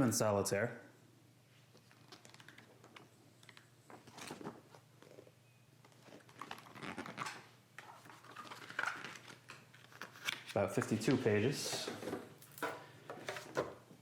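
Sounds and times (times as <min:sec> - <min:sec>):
paper pages rustling: 0:01.6 - 0:05.2, 0:05.9 - 0:12.2.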